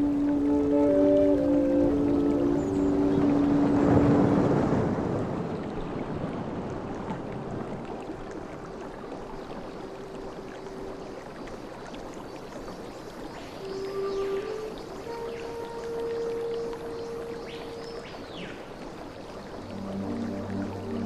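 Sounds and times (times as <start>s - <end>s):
ocean wave washing in: 2.2s - 6.9s.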